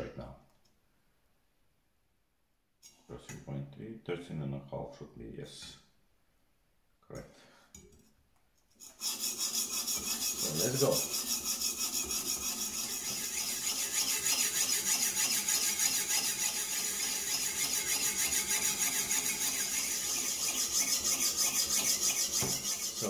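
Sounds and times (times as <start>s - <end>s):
knife rasping on sharpening stone: 8.8s - 23.0s.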